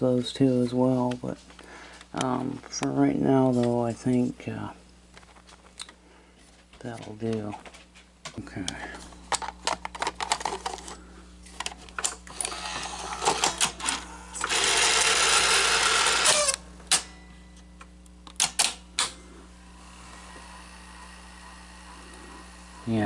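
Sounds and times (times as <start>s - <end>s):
vcr mechanical whirring: 8.4s - 23.0s
vcr mechanism clicks and clunks: 11.5s - 17.3s, 18.2s - 19.2s.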